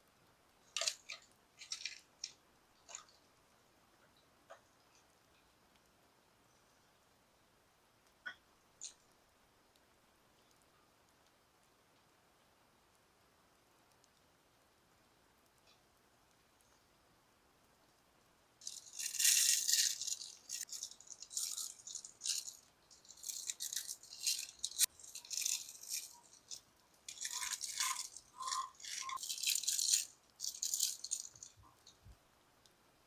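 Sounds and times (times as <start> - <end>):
dry rattling: 18.6 - 31.8.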